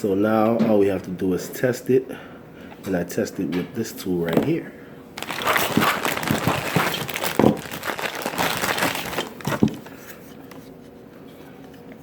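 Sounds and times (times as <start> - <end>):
crinkling rustling handling noise: 5.2 - 10.3.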